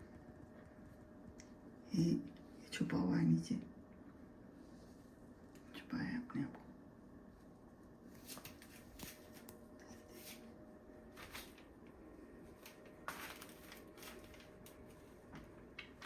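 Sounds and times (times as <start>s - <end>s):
faint clicks and rustles: 7.2s - 16.0s.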